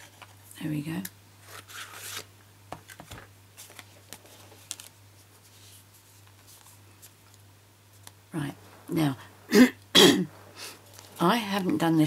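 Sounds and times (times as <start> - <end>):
paper rustles: 1.4 - 2.3, 2.9 - 7.4
low steady hum: 2.3 - 12.0.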